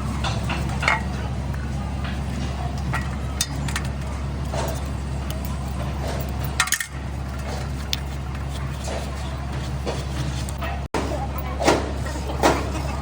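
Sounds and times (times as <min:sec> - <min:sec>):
steady low hum: 0:00.0 - 0:13.0
metal tools clinking: 0:02.9 - 0:08.1.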